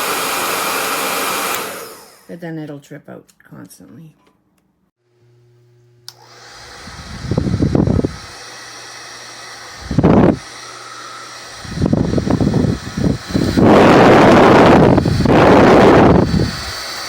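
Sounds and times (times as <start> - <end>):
hair dryer blowing: 0.0 - 2.4, 6.0 - 17.0
hair dryer switch click: 1.5 - 1.8, 6.0 - 6.4
airflow gusting into microphone: 6.6 - 8.4, 9.6 - 10.6, 11.4 - 17.0.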